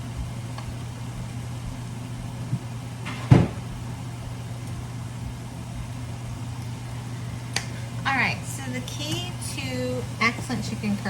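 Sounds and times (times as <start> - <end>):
steady low hum: 0.0 - 11.0
knocks: 2.5 - 3.6.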